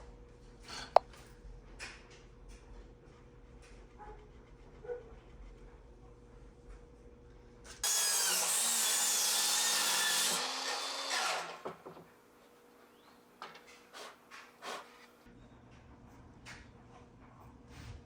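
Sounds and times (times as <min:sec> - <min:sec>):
power saw cutting wood: 0:07.8 - 0:11.8.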